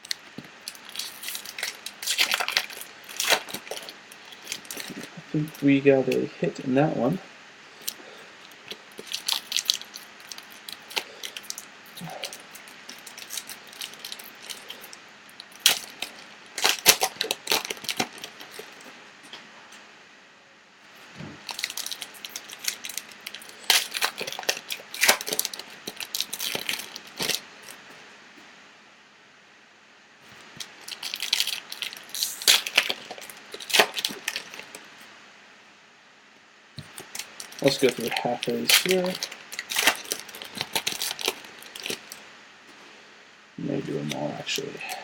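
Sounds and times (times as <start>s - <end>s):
card wrappers tearing and crinkling: 0.0s - 6.2s, 7.8s - 18.9s, 21.4s - 27.8s, 30.4s - 34.9s, 36.8s - 42.2s, 43.9s - 45.0s.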